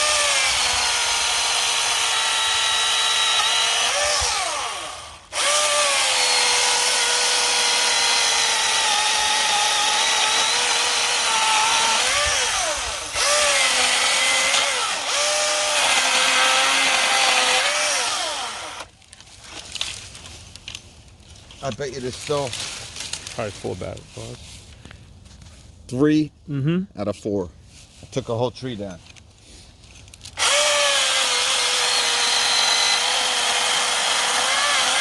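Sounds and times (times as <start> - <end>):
electric chainsaw cutting wood: 0.0 - 18.9, 30.4 - 35.0.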